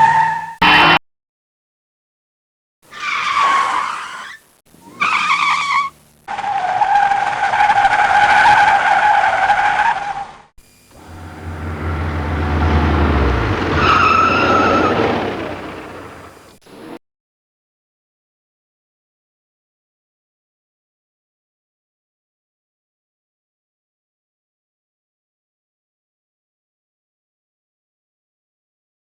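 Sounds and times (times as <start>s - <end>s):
car tires screeching: 0.0s - 1.0s, 2.9s - 16.9s
low engine rumble: 10.8s - 16.6s.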